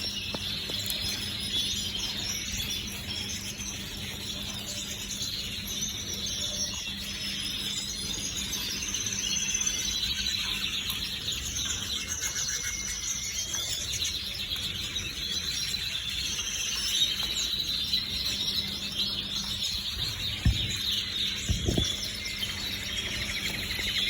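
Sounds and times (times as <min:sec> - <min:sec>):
canaries chirping and trilling: 0:00.0 - 0:24.0
low thumps: 0:20.4 - 0:22.0.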